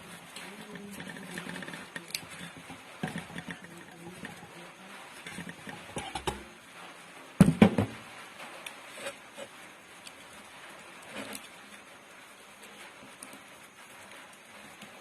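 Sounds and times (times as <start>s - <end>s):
knocks: 7.4s - 8.0s.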